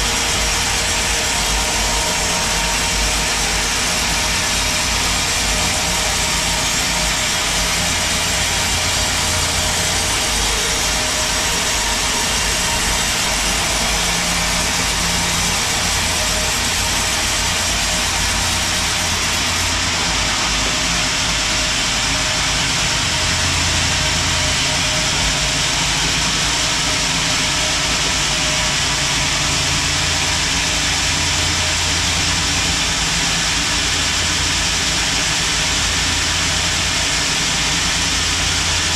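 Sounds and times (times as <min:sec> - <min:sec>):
sawmill machinery running: 0:00.0 - 0:38.9.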